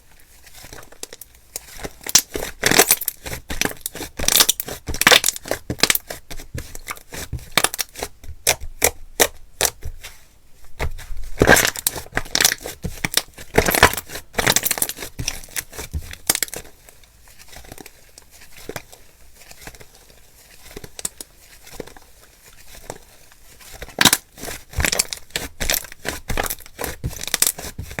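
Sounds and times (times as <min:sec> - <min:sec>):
slime crackling and popping: 0:01.9 - 0:06.1, 0:07.6 - 0:09.8, 0:11.4 - 0:16.6, 0:23.9 - 0:27.7.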